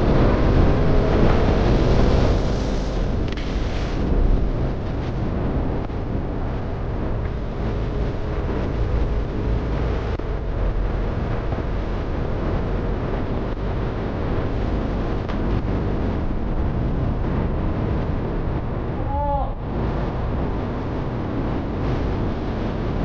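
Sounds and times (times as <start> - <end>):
wind rush on microphone: 0.0 - 23.0.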